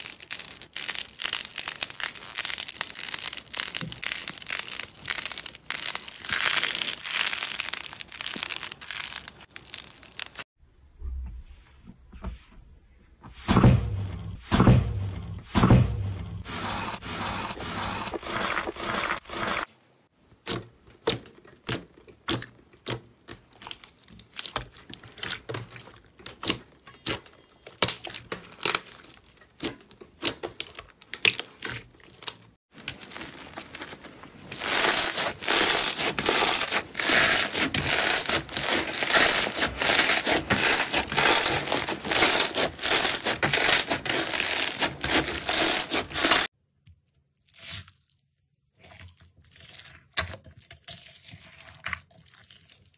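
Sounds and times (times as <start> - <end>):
slime crackling and popping: 0.0 - 10.5, 22.3 - 46.5.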